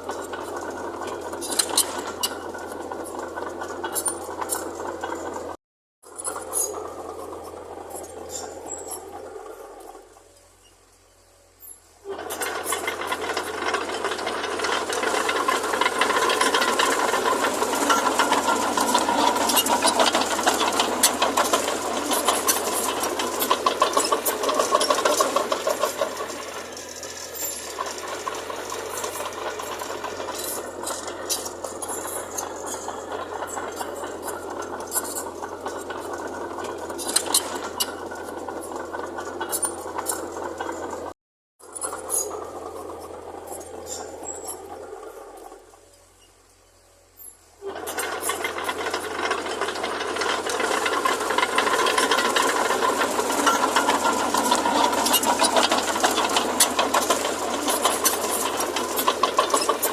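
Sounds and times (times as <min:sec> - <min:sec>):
metallic clatter: 0:00.0 - 0:46.6, 0:47.2 - 0:59.9
diesel machinery engine running: 0:00.0 - 0:59.9.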